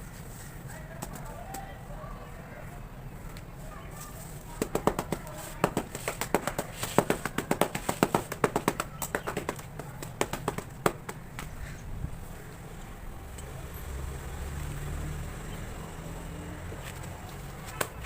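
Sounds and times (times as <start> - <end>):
tapping on hardened cement: 4.5 - 11.6.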